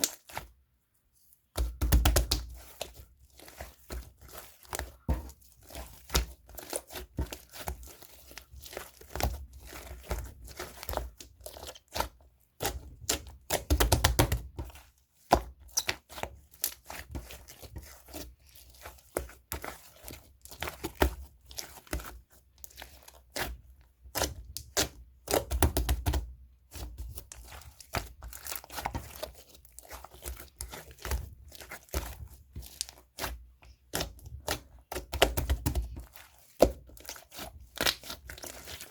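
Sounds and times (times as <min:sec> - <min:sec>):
slime squishing thuds: 0:01.5 - 0:18.2.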